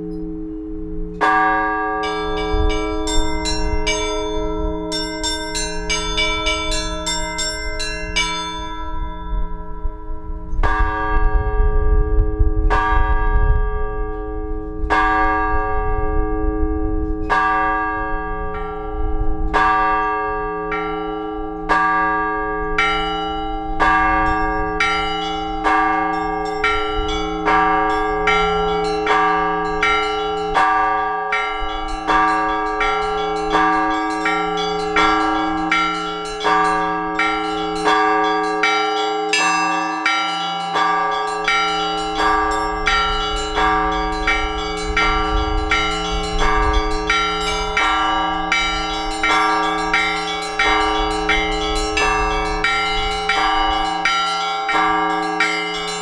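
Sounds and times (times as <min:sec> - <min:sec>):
low bells humming: 0:00.0 - 0:56.0
small bells striking rhythmically: 0:01.2 - 0:10.1, 0:17.2 - 0:56.0.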